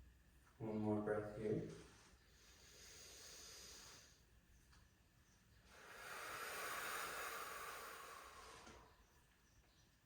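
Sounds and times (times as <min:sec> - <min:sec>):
person breathing deeply: 0:02.4 - 0:04.2, 0:05.7 - 0:09.2.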